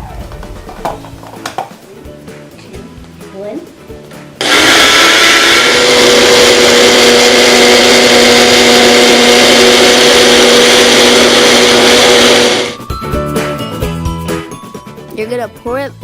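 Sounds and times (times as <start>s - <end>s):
blender running at high speed: 4.4s - 12.8s.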